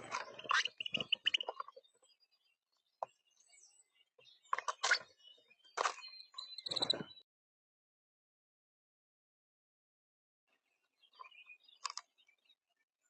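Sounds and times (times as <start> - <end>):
birds pecking and scuffling: 0.0 - 1.8
high bird chirps: 0.0 - 7.2, 10.9 - 12.6.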